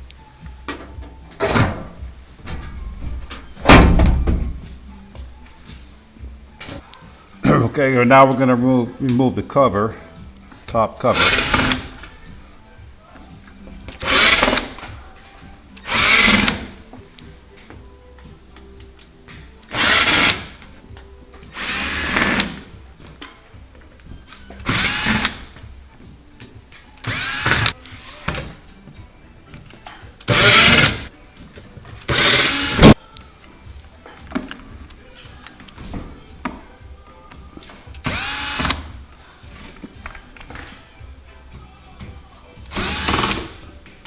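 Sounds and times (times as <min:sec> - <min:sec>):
power drill bursts: 0:11.1 - 0:12.0, 0:14.0 - 0:14.8, 0:15.8 - 0:16.7, 0:19.7 - 0:20.5, 0:21.6 - 0:22.6, 0:24.6 - 0:25.4, 0:27.1 - 0:28.2, 0:30.3 - 0:31.0, 0:32.1 - 0:33.0, 0:38.0 - 0:38.9, 0:42.7 - 0:43.5.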